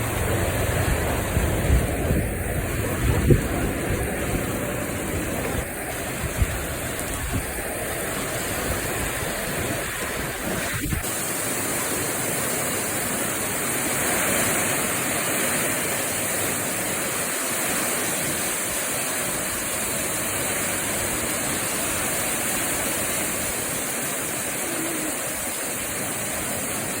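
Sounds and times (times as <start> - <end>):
wind buffeting microphone: 0.0 - 11.1
heavy rain falling: 0.0 - 27.0.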